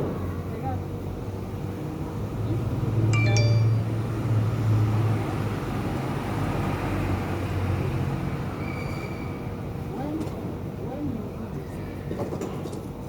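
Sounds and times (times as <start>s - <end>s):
ornaments clinking: 3.2s - 4.0s.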